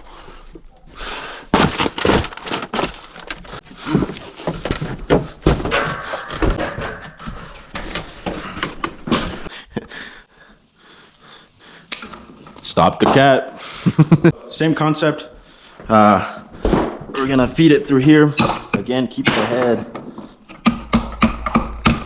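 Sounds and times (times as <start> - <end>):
knocks and thumps: 1.5 - 9.5, 16.6 - 17.2, 18.4 - 22.0.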